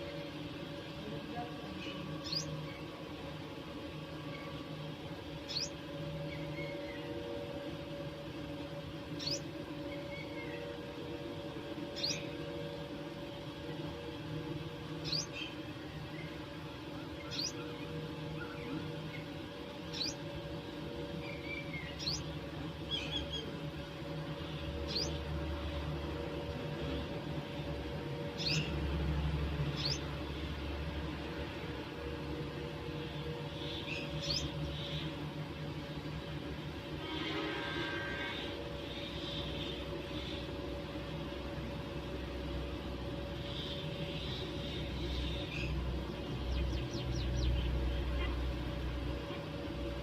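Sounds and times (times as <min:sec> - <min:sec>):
steady low hum: 0:00.0 - 0:50.0
sparrows chirping: 0:01.0 - 0:02.9, 0:05.4 - 0:07.2, 0:09.1 - 0:11.0, 0:11.8 - 0:12.5, 0:14.8 - 0:20.4, 0:21.1 - 0:23.8, 0:24.4 - 0:25.8, 0:26.6 - 0:31.8, 0:33.0 - 0:36.0, 0:38.3 - 0:40.6, 0:43.4 - 0:48.6.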